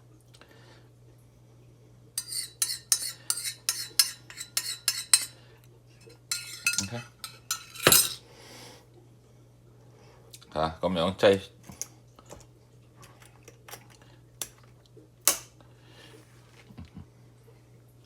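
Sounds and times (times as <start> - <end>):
faint steady hum: 0.0 - 18.0
metal spoon scraping a dish: 2.2 - 5.4, 6.0 - 8.2.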